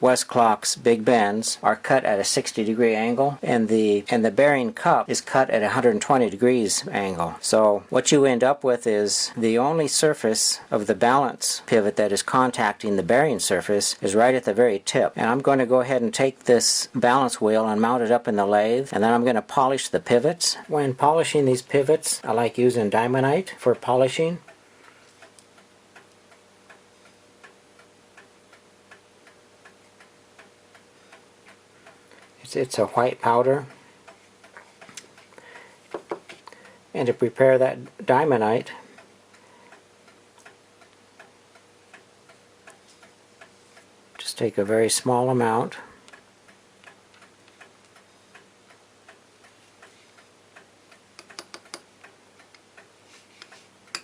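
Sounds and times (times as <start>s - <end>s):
faint steady hum: 0.0s - 54.0s
mechanical clock ticking: 0.0s - 54.0s
small objects clicking on bench: 35.9s - 36.6s, 51.2s - 52.6s, 53.4s - 54.0s.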